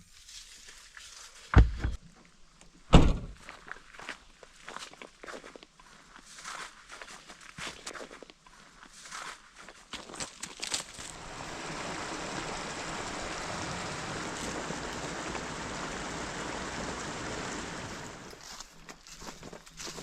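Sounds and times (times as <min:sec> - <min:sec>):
footsteps crunching through dry leaves: 0:03.5 - 0:11.3, 0:18.3 - 0:20.0
steady rushing noise: 0:11.1 - 0:18.4.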